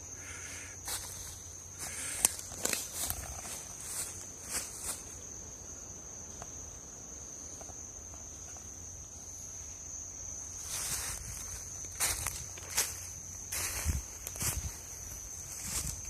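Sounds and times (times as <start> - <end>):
night insects trilling: 0.0 - 16.0
soft rustling footsteps: 0.9 - 5.2, 10.6 - 16.0.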